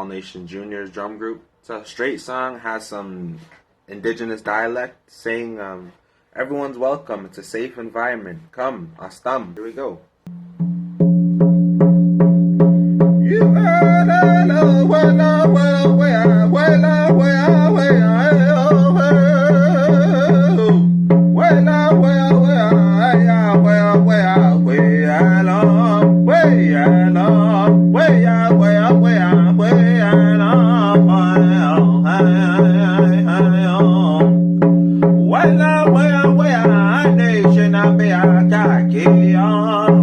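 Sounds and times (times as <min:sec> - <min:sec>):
hand drum beating: 0:10.3 - 0:40.0
person singing in high voice: 0:13.2 - 0:34.3.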